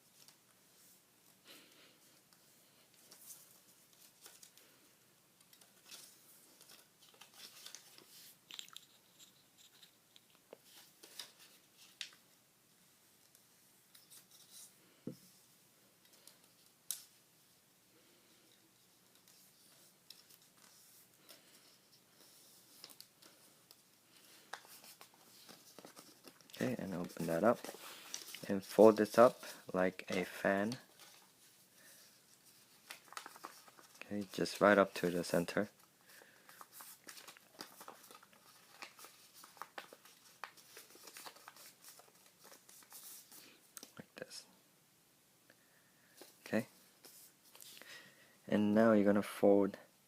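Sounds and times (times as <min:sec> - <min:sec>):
paper rustling and folding: 0:02.3 - 0:12.2, 0:18.6 - 0:44.0.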